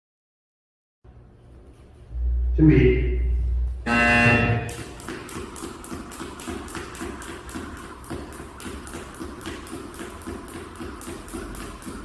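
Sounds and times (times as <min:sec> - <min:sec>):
jump rope slapping the floor: 0:04.7 - 0:12.0.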